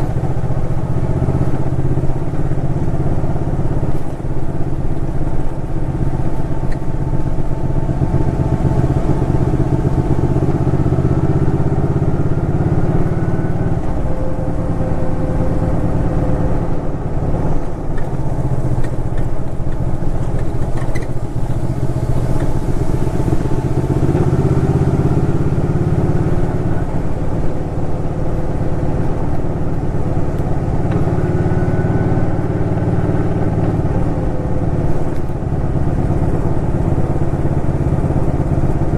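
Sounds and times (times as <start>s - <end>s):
motorcycle engine accelerating: 0.0s - 38.9s.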